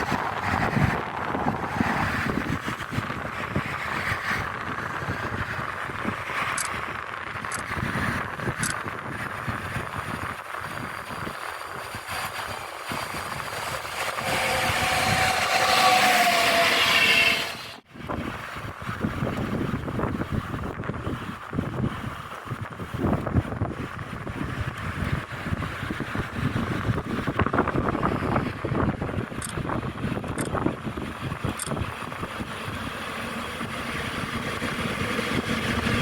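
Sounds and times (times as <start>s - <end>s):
train rumbling past: 0.0s - 8.2s, 10.4s - 21.7s, 23.5s - 36.0s
high-pitched squeal: 12.9s - 17.8s.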